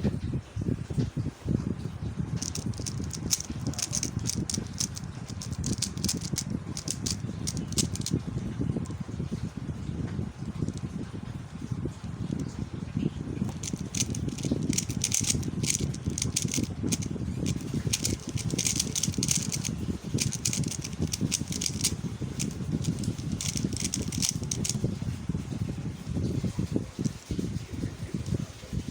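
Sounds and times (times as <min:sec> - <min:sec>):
steady low rumble: 0:00.0 - 0:28.9
plastic puzzle cube clicking: 0:02.4 - 0:08.1, 0:13.5 - 0:24.8.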